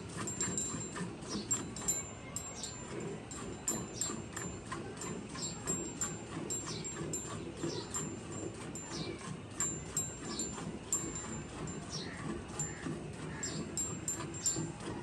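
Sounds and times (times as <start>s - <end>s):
small birds chirping: 2.5s - 2.8s, 11.9s - 14.6s.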